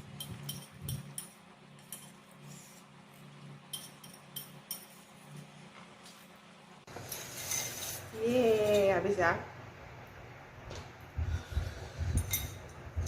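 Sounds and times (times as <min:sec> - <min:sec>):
low steady hum: 0:00.0 - 0:13.0
utensil clinking on dish: 0:03.7 - 0:05.0.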